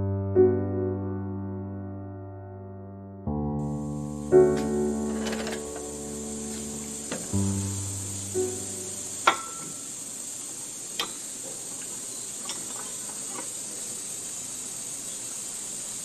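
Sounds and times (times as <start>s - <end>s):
high-pitched hiss: 3.6s - 16.0s.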